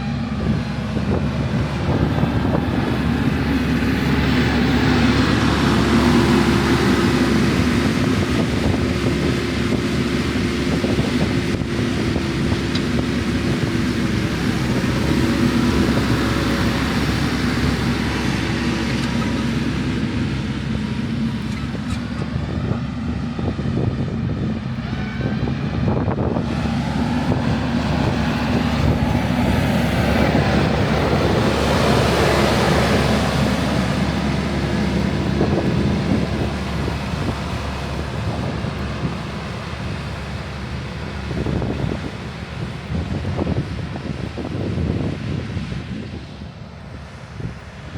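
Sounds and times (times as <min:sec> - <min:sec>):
tractor diesel engine running: 0:00.0 - 0:47.9
wind buffeting microphone: 0:00.0 - 0:47.9.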